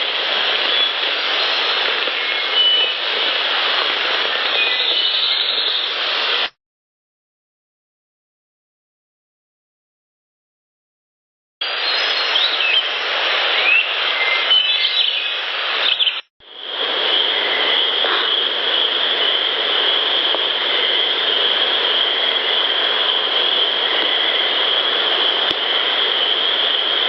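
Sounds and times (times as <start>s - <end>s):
steady hiss: 0.0s - 6.5s, 11.6s - 27.0s
bird chirps: 13.6s - 16.2s
high-pitched drone: 16.4s - 27.0s.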